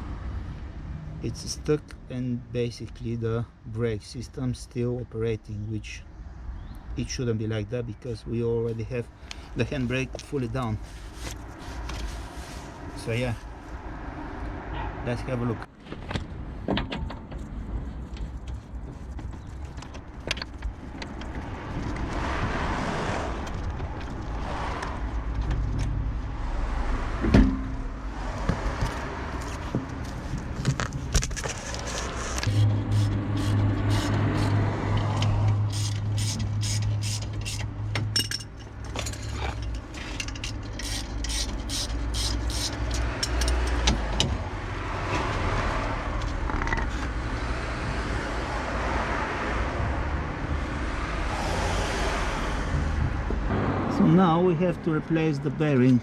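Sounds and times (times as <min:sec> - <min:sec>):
metal tools clinking on wheel hub: 0:35.1 - 0:43.9.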